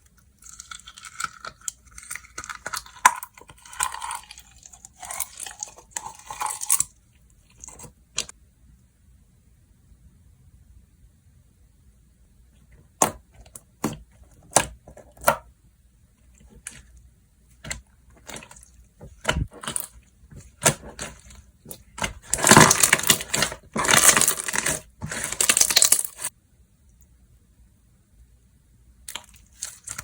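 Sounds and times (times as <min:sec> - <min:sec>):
slime crackling: 0:17.6 - 0:26.3.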